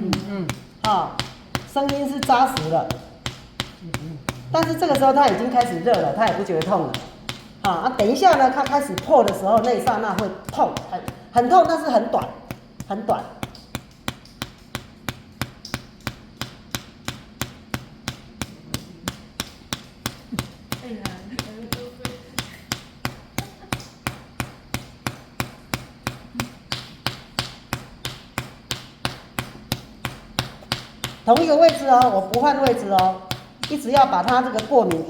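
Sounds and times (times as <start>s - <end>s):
hand slapping a back: 0.0s - 35.0s.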